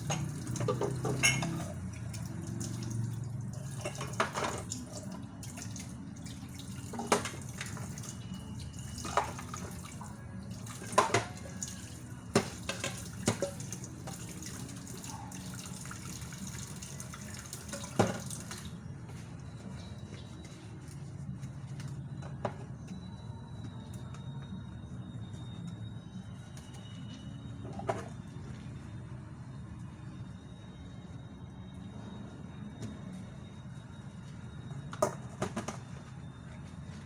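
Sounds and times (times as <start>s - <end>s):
dishes clinking and knocking: 0.0s - 1.8s, 3.8s - 4.7s, 6.9s - 7.4s, 10.8s - 11.4s, 12.3s - 13.6s
water running from tap into sink: 8.8s - 18.7s.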